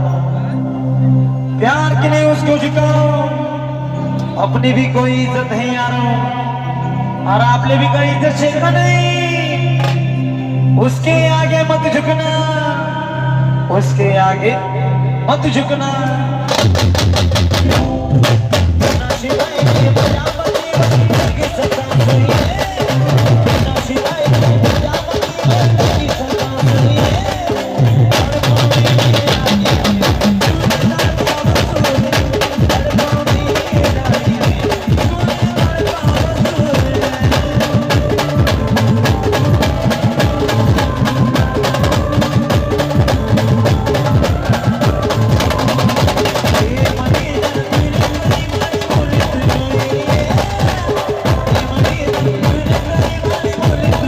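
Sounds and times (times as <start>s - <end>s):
live band instrumental: 0.0s - 54.0s
steady drum beat: 16.5s - 54.0s
wood block percussion: 16.5s - 54.0s
wavering melody line: 21.6s - 54.0s.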